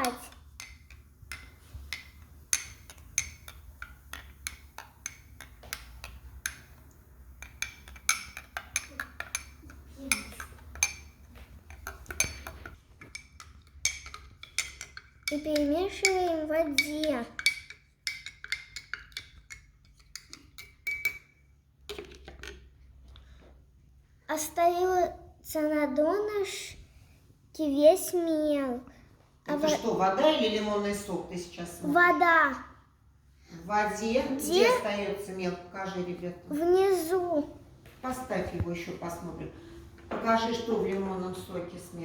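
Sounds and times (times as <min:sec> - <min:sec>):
spoon clinking against cup: 0:00.0 - 0:06.8, 0:07.4 - 0:16.2, 0:16.8 - 0:22.6.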